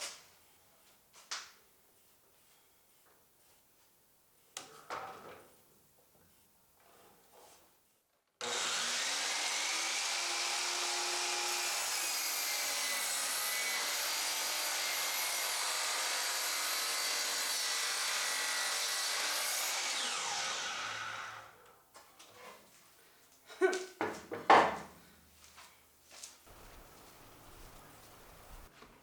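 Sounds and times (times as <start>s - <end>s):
power saw cutting wood: 8.4s - 21.6s.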